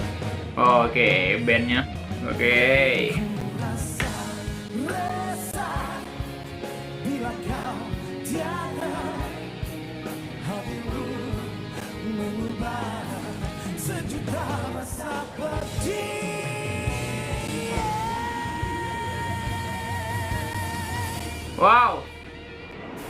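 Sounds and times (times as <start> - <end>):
pop-rock band playing: 0.0 - 23.0
man singing rock-style: 2.3 - 5.9, 7.0 - 9.4, 10.2 - 21.6.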